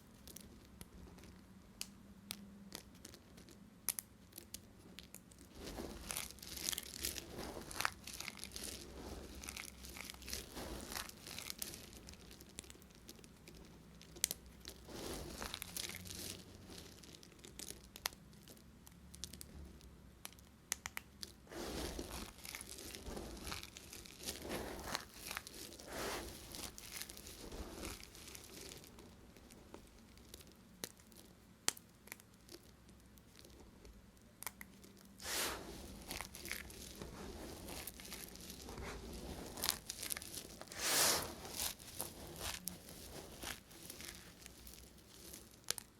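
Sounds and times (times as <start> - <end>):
knife cutting dry soap: 21.5 - 28.9, 35.2 - 45.8.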